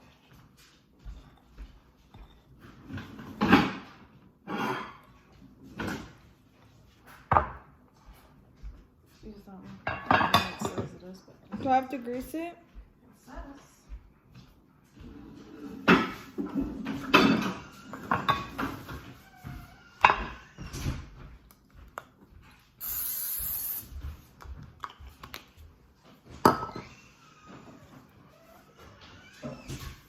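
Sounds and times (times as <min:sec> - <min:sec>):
dishes and utensils clattering: 0:01.0 - 0:06.3, 0:09.8 - 0:11.9, 0:15.0 - 0:21.3, 0:26.3 - 0:28.1
short hiss: 0:22.8 - 0:23.9.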